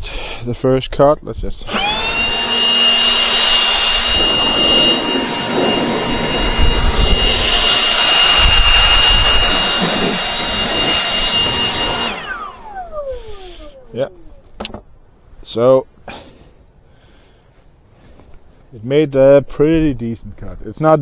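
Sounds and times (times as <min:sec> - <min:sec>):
bandsaw high whine: 0:01.6 - 0:14.6.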